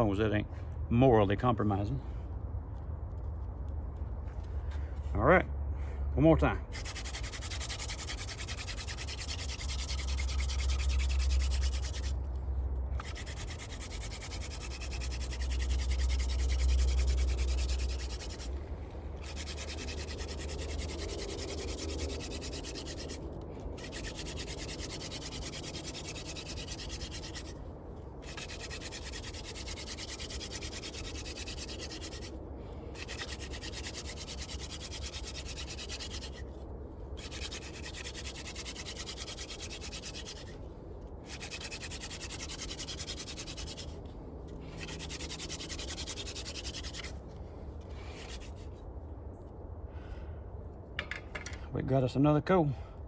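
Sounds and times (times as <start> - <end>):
wooden spindle rasping on board: 6.7 - 12.2, 13.0 - 18.6, 19.2 - 27.6, 28.2 - 32.3, 33.0 - 36.4, 37.2 - 40.6, 41.3 - 44.0, 44.8 - 47.2, 48.1 - 48.6.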